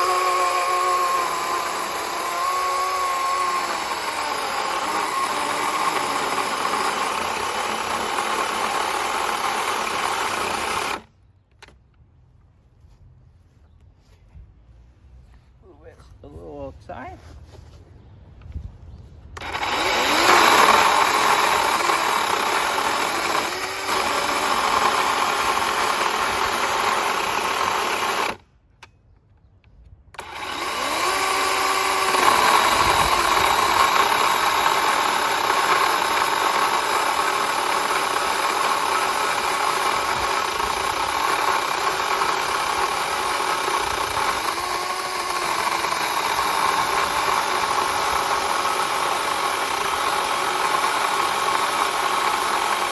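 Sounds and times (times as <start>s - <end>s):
chainsaw cutting through log: 0.0s - 11.1s, 19.4s - 28.4s, 30.2s - 52.9s.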